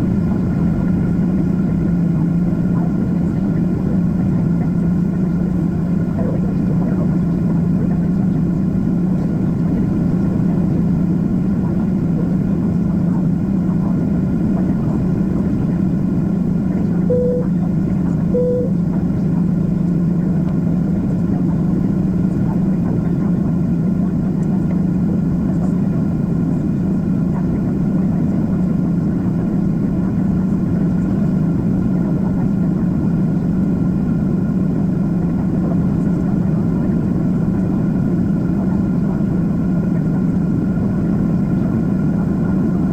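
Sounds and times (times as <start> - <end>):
airplane cabin noise: 0.0 - 30.3
short tones: 17.1 - 17.6, 18.4 - 18.8.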